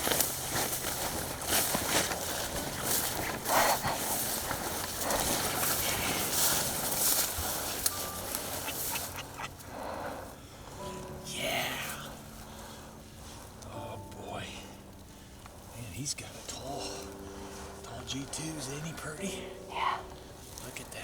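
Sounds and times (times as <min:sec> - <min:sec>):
footsteps in ground cover: 0:00.0 - 0:21.0
rustling in ground cover: 0:00.0 - 0:21.0.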